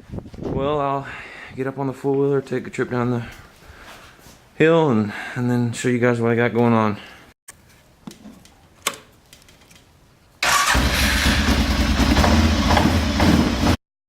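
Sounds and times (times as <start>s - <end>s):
quad bike engine running: 10.7s - 13.8s.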